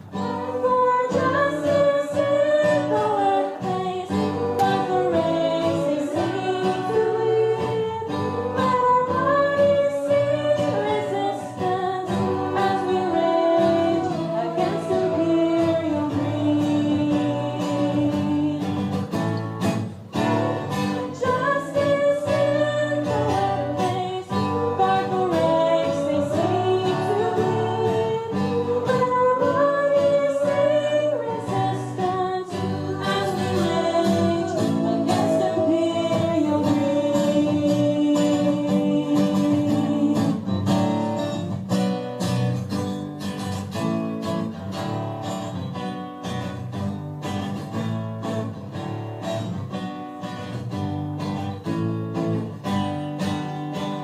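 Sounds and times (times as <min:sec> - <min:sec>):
group of voices singing: 0:00.0 - 0:19.1, 0:20.2 - 0:41.4
guitar accompaniment: 0:00.0 - 0:54.0.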